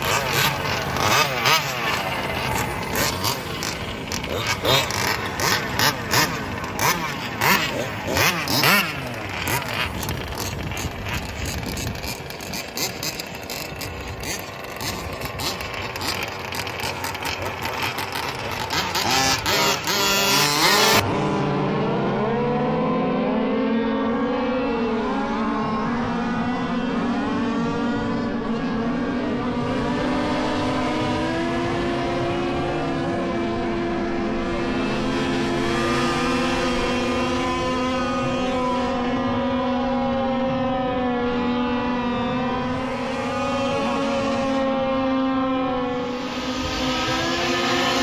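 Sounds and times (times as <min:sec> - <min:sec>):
rc car engines buzzing: 0:00.0 - 0:21.0, 0:35.0 - 0:39.0, 0:42.3 - 0:48.0.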